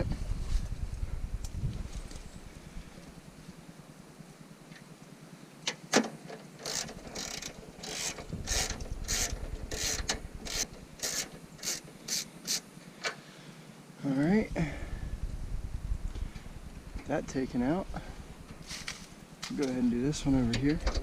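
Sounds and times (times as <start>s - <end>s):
ratchet wrench clicking: 6.6s - 12.6s.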